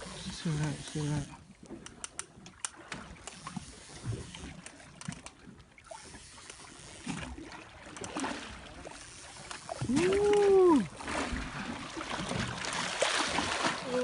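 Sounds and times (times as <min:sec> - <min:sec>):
rush of water: 0:06.9 - 0:14.0.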